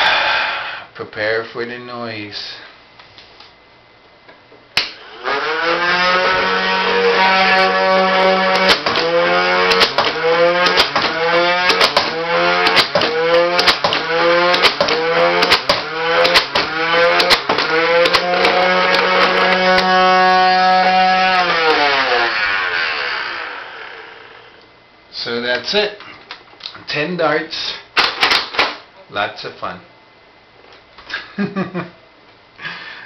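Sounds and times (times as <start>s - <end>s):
flywheel motor whine: 5.0s - 24.6s.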